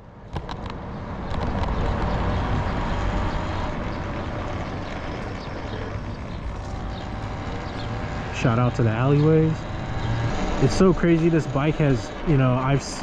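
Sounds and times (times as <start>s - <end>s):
road noise: 0.0s - 13.0s.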